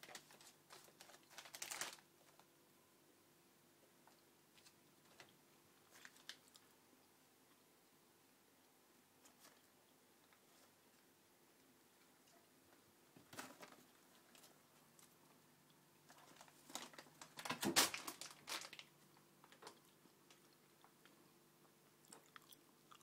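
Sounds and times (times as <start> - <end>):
food packet crinkling: 0.0 - 2.4, 5.9 - 6.7, 16.1 - 20.6.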